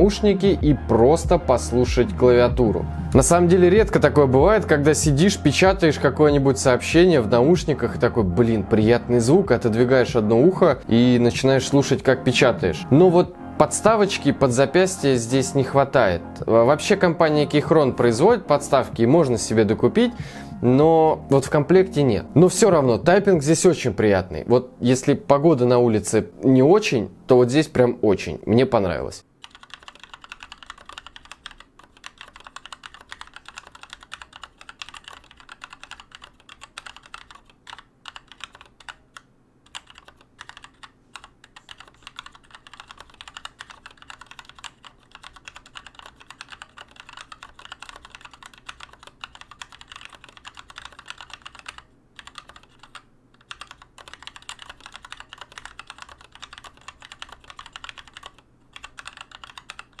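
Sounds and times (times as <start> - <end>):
mechanical keyboard typing: 29.4 - 60.0.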